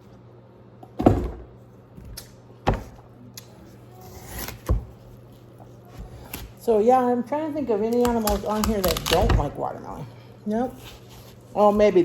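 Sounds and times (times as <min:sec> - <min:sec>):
knife scrape: 0:03.9 - 0:04.7, 0:10.6 - 0:12.0.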